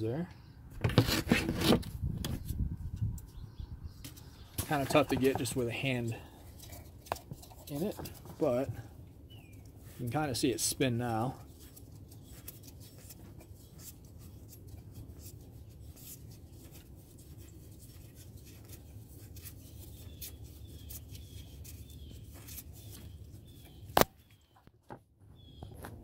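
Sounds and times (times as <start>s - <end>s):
faint metal scraping: 4.2s - 8.8s.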